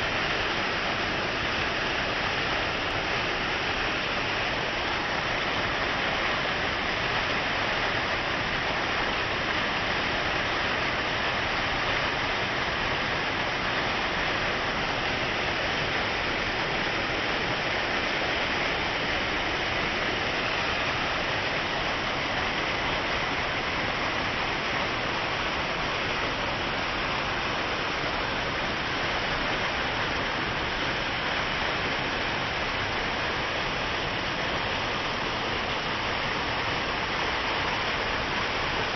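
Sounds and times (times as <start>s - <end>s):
waterfall rushing over rock: 0.0s - 38.9s.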